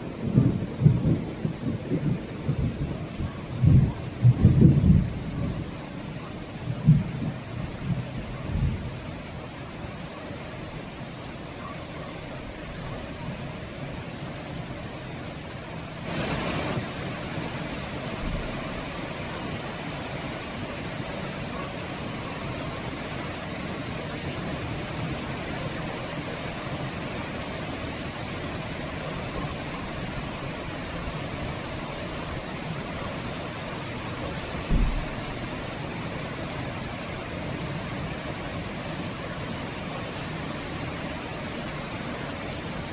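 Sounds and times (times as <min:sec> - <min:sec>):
steady rain: 0:00.0 - 0:42.9
short low thump: 0:34.7 - 0:35.3.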